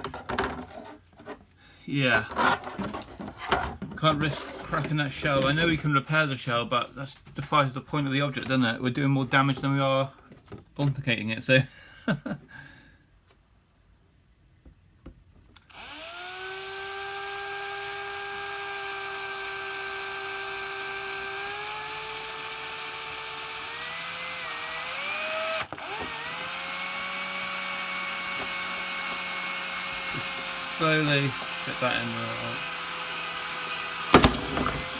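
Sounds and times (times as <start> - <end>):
electric drill boring plastic: 15.6 - 34.9.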